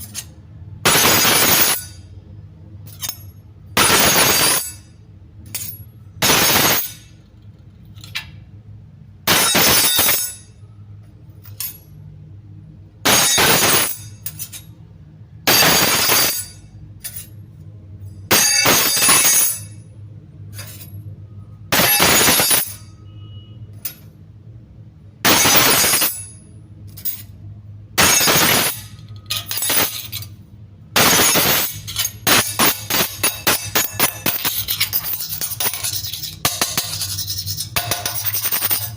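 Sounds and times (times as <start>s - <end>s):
metal spoon clinking: 13.2s - 14.7s, 15.6s - 17.4s, 28.0s - 30.4s, 31.0s - 38.9s.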